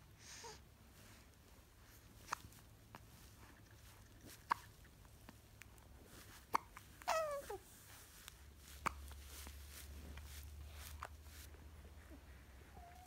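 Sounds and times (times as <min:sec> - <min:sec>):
hiccups: 0:04.3 - 0:04.9, 0:06.5 - 0:07.4.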